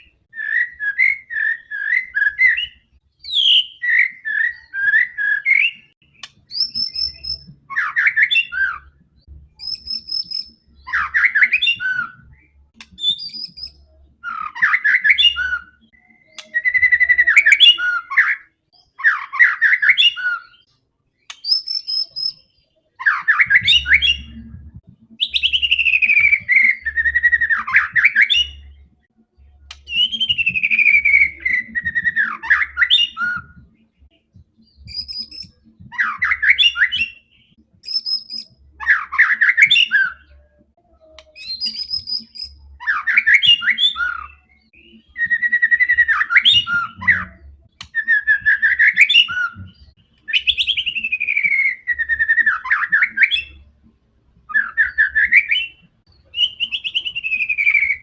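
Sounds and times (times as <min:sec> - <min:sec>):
bird singing varied phrases: 0:00.0 - 0:53.7, 0:54.4 - 0:58.0.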